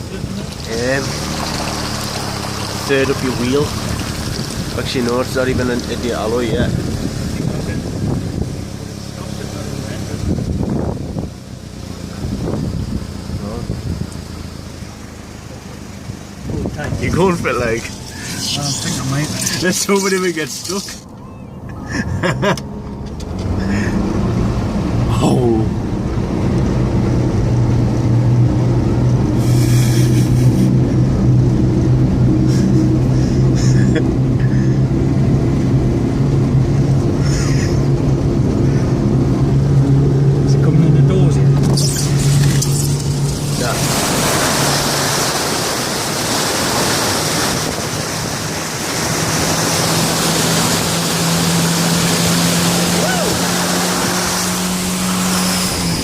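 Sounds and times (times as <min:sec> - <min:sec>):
vehicle engine running: 0:00.0 - 0:56.0
water splashing against vehicle: 0:00.0 - 0:56.0
brief hiss: 0:29.4 - 0:30.7.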